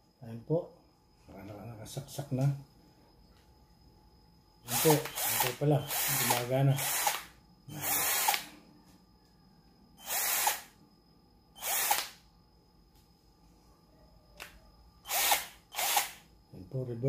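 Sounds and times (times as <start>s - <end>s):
cordless drill motor bursts: 4.7s - 8.5s, 10.0s - 10.7s, 11.6s - 12.2s, 15.0s - 16.2s.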